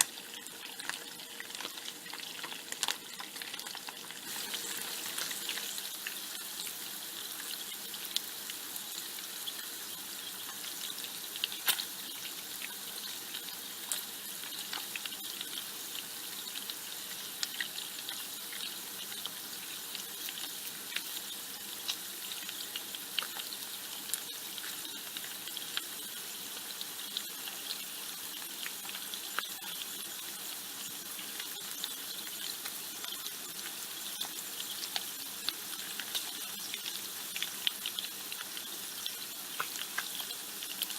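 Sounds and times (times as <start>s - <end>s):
bacon sizzling in a pan: 0.0s - 40.9s
fat crackling and popping: 0.7s - 6.7s, 10.4s - 12.7s.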